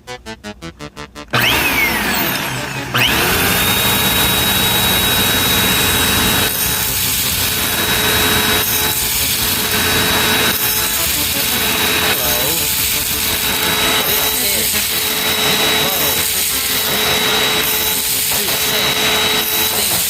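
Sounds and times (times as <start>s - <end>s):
musical jingle: 0.0s - 17.3s
vacuum cleaner whining: 1.3s - 20.0s.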